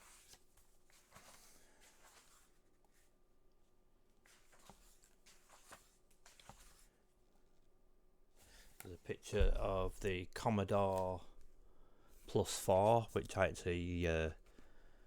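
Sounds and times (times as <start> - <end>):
book pages rustling and turning: 0.0 - 3.2, 4.1 - 7.5, 10.7 - 11.4.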